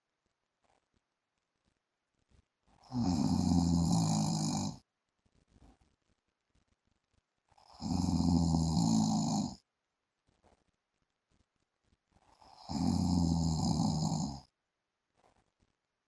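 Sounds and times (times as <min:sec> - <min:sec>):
man snoring: 0:02.8 - 0:04.8, 0:07.7 - 0:09.6, 0:12.4 - 0:14.5.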